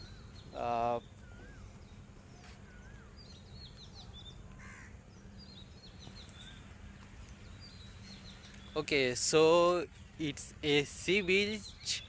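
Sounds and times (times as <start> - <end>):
small birds chirping: 0.0 - 12.0
crow cawing: 4.6 - 4.9.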